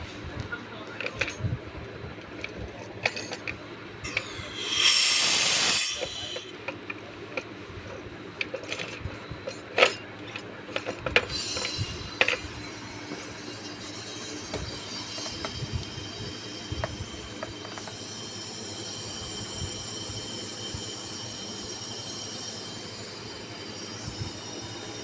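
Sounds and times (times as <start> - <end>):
gas hissing out: 4.1 - 6.5.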